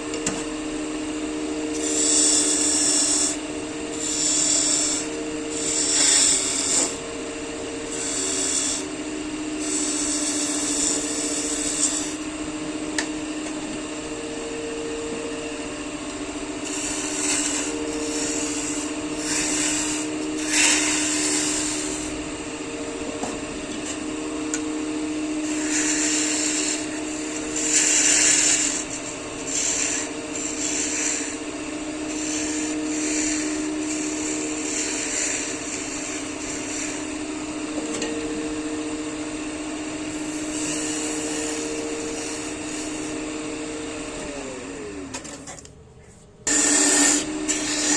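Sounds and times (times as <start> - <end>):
wood lathe humming: 0.0 - 45.2, 46.5 - 47.9
turning tool cutting wood: 1.5 - 7.0, 7.7 - 12.3, 16.6 - 22.2, 25.4 - 37.3, 39.9 - 45.5, 46.5 - 47.9.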